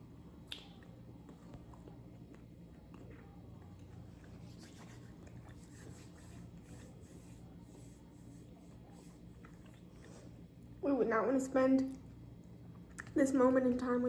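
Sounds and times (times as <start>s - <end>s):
low steady hum: 0.0s - 14.0s
soft wet chewing: 0.1s - 10.8s, 11.8s - 13.8s.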